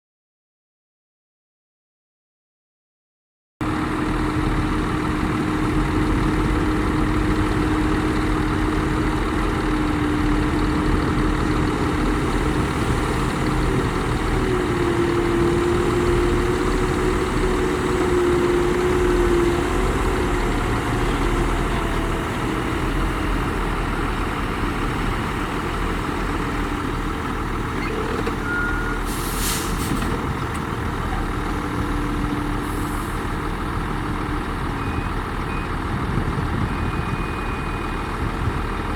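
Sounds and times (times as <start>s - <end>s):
diesel machinery engine running: 3.6s - 38.9s
released air hiss: 29.0s - 30.1s.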